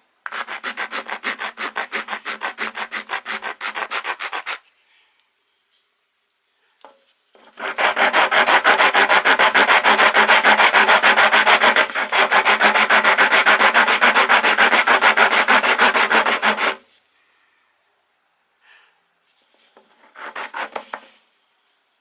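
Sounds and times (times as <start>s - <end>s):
rasp filing wood: 0.3s - 4.6s, 7.4s - 16.8s, 20.0s - 21.0s.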